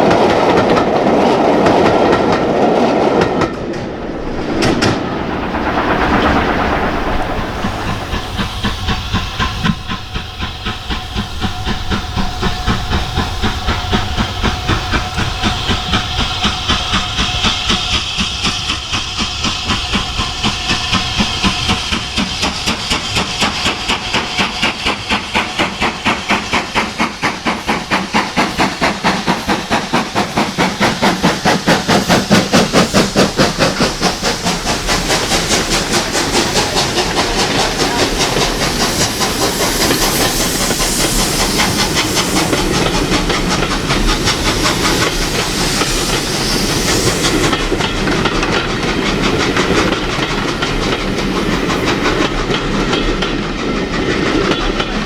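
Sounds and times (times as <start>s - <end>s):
steam hissing: 0.0s - 55.0s
steam locomotive exhaust beats: 0.0s - 55.0s.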